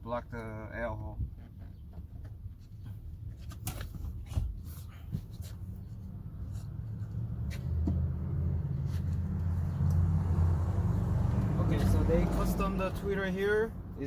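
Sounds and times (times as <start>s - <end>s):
vehicle engine rumble: 0.0s - 14.0s.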